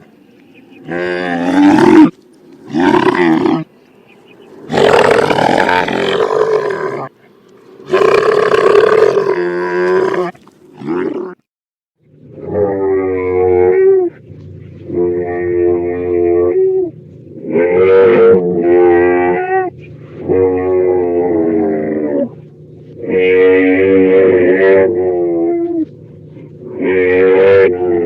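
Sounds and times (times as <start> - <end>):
camel gurgling calls: 12.3 - 28.0.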